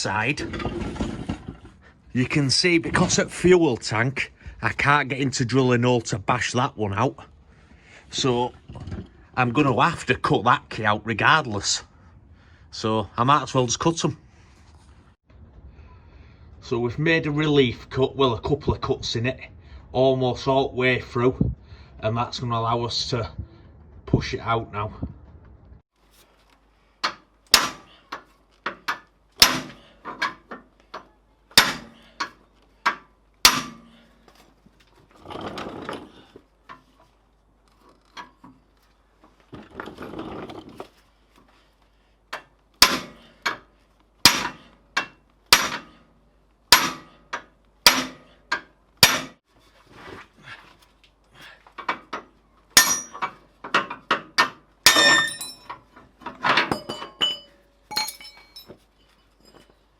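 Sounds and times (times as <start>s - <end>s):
hammer striking metal: 27.5s - 27.9s, 29.4s - 29.8s, 31.6s - 32.0s, 32.9s - 34.0s, 42.8s - 43.6s, 44.3s - 45.9s, 46.7s - 49.4s, 52.8s - 53.3s, 54.4s - 55.7s.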